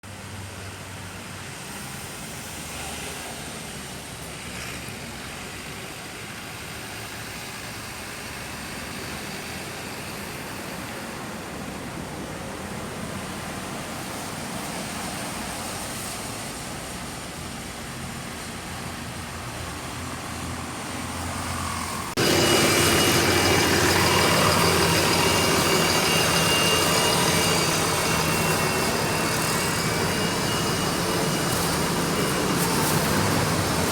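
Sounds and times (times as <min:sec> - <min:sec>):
road traffic noise: 0:00.0 - 0:33.9
vehicle engines idling: 0:03.4 - 0:33.9.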